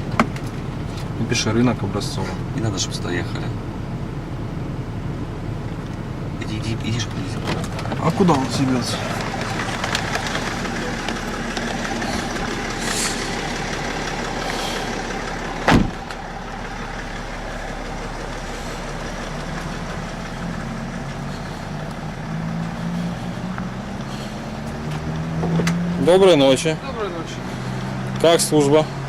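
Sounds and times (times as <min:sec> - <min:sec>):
road traffic noise: 0:00.0 - 0:29.0
sharp thump: 0:15.6 - 0:16.2.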